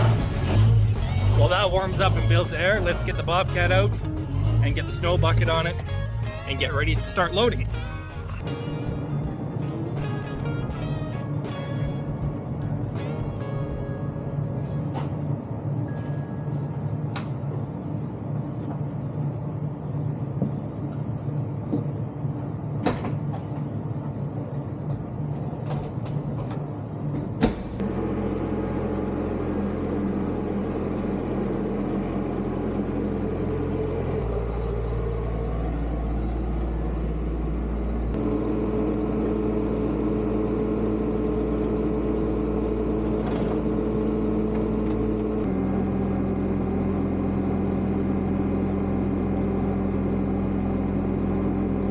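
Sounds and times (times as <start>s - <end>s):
diesel engine idling: 0.0s - 8.4s, 27.8s - 51.9s
louder engine changing speed: 0.0s - 8.4s, 27.8s - 51.9s.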